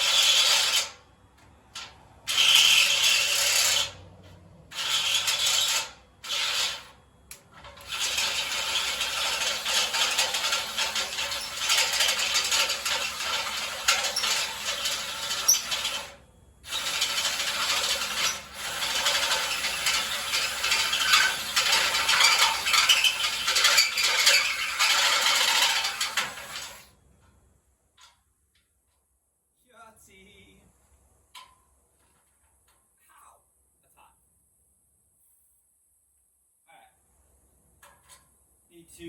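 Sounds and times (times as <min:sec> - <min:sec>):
metal rattling and scraping: 0:01.7 - 0:06.9, 0:07.5 - 0:26.9.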